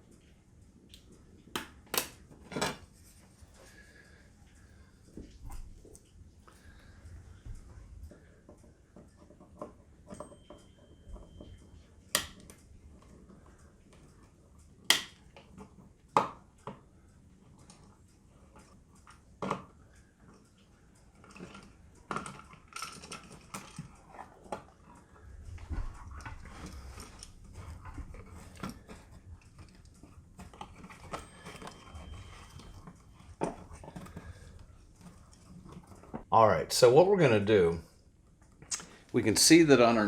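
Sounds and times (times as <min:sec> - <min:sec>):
low scraping and handling noise: 0:16.6 - 0:37.7.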